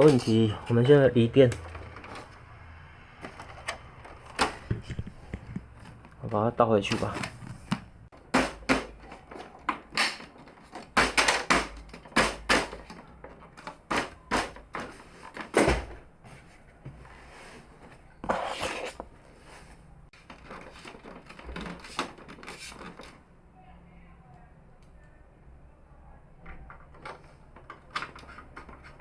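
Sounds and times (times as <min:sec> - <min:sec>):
plastic parts knocking and clattering: 0:00.0 - 0:02.4, 0:03.2 - 0:16.1, 0:20.2 - 0:23.2, 0:26.5 - 0:29.0.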